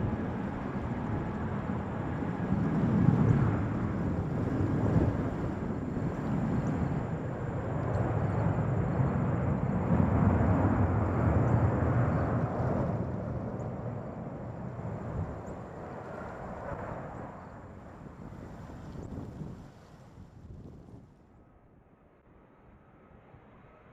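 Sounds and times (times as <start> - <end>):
jet airliner passing overhead: 0.0 - 20.2.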